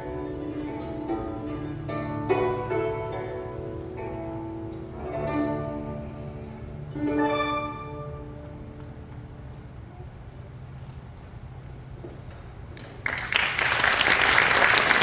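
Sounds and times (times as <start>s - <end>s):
plucked zither chords: 0.0s - 8.8s.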